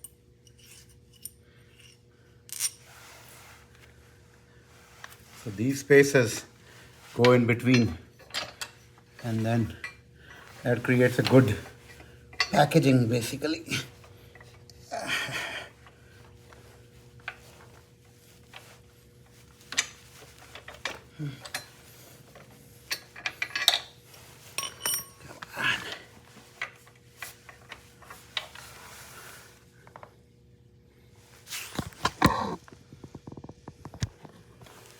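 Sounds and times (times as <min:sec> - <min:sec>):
metal hardware clinking: 0:00.0 - 0:02.8, 0:19.7 - 0:25.5.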